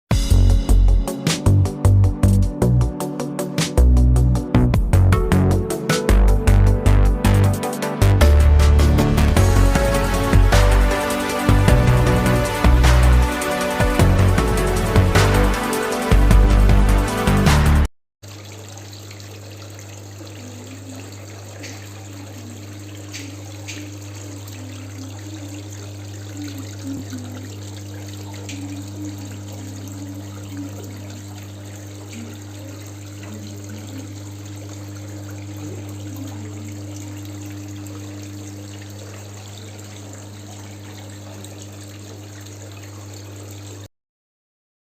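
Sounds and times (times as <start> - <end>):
music: 0.1 - 17.9
water pouring and splashing: 8.5 - 16.2, 17.5 - 43.9
low steady hum: 18.3 - 43.6.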